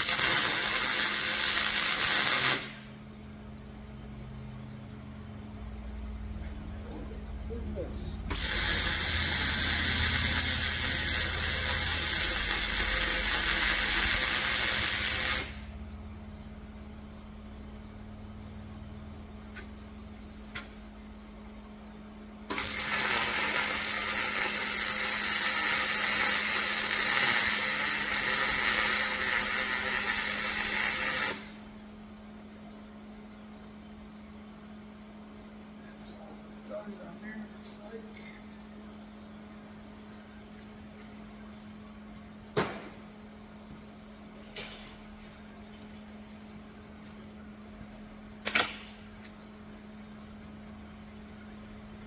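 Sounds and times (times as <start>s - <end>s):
arc welding crackling hiss: 0.0s - 3.0s, 8.2s - 15.8s, 22.5s - 31.6s
faint hum: 0.0s - 52.0s.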